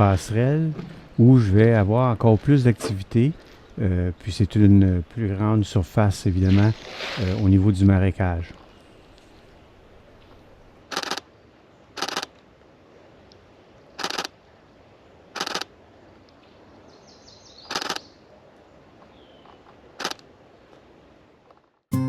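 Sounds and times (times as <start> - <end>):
camera shutter bursts: 10.9 - 11.2, 12.0 - 12.3, 14.0 - 14.3, 15.4 - 15.7, 17.7 - 18.0, 20.0 - 20.2
soft bird chirps: 16.4 - 18.3, 19.0 - 19.7.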